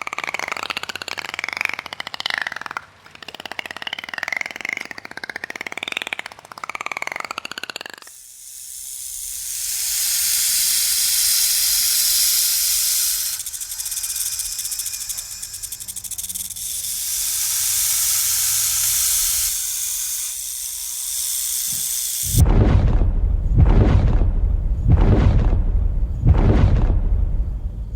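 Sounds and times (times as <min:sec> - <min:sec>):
animal hissing: 0:08.1 - 0:22.4.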